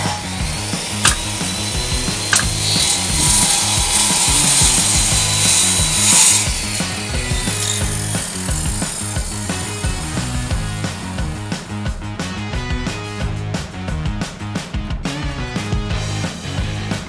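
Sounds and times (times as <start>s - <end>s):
power tool hiss: 0.0s - 11.2s
sharp crack: 0.0s - 11.2s
background music with bass line: 0.0s - 17.0s.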